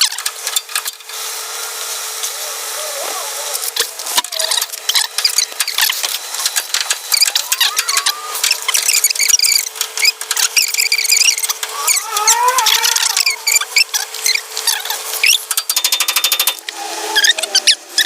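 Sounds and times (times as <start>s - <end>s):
metallic clicks and squeaks: 0.0s - 1.1s, 4.3s - 18.0s
short rising squeals: 7.1s - 15.5s, 16.6s - 18.0s.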